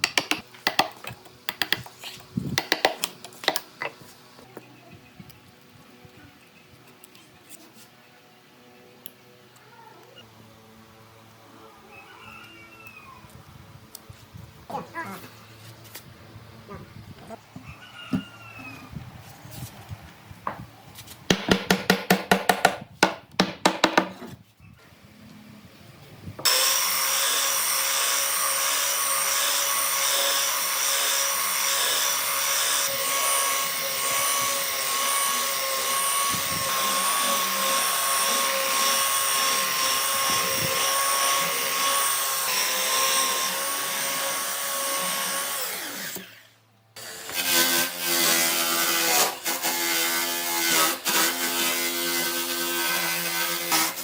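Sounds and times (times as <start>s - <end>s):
sharp knocks: 21.3s - 24.2s
power tool high whine: 26.4s - 47.5s.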